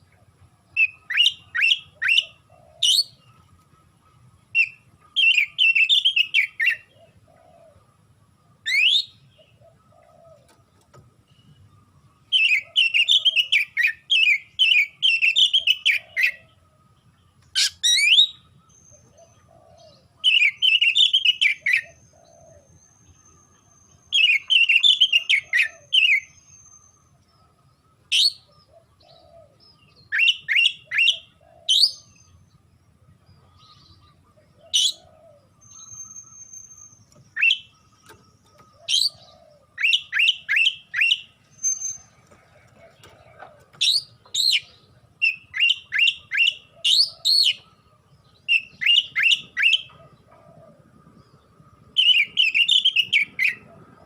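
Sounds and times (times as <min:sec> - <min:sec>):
bird chattering song: 0:00.0 - 0:07.9, 0:08.5 - 0:54.0
bird sharp rising whistles: 0:39.8 - 0:42.1.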